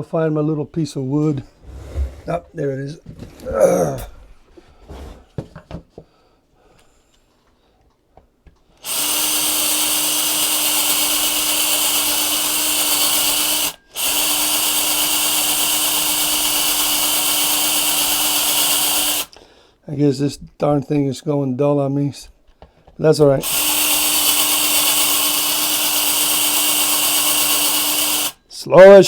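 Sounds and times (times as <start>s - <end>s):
electric drill boring: 8.8s - 19.4s, 23.4s - 28.4s.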